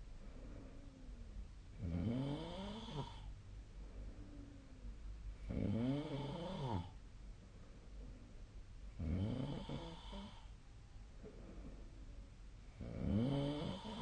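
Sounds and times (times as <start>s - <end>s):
soft breath: 0.0s - 1.8s, 2.6s - 5.6s, 6.6s - 9.0s, 9.6s - 12.9s
person snoring: 1.8s - 3.3s, 5.5s - 7.0s, 9.0s - 10.5s, 12.8s - 14.0s.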